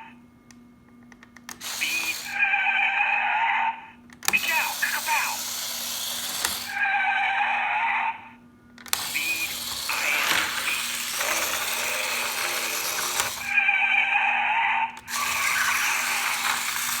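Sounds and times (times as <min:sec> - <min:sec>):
toy clicks: 0:01.2 - 0:02.4, 0:04.2 - 0:06.8, 0:08.8 - 0:13.6, 0:15.0 - 0:17.0.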